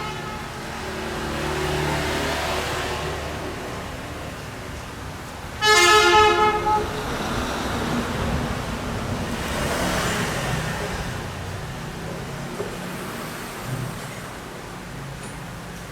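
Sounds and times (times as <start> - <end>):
vehicle horn honk: 0.0 - 0.7, 5.6 - 7.1
vehicle noise rumble: 0.0 - 15.9.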